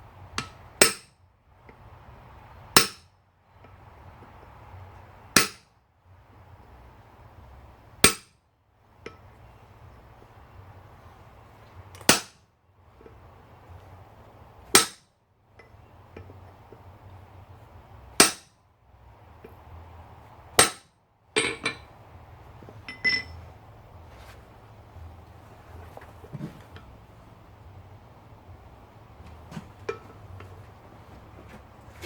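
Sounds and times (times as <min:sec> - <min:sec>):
faint low hum: 0:00.0 - 0:32.0
hammer ringing on anvil: 0:22.9 - 0:23.4.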